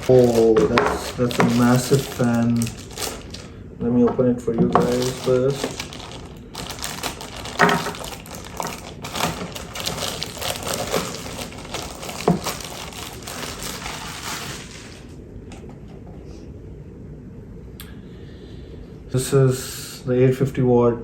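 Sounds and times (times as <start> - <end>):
packaging rustling and crinkling: 0.0 - 15.2.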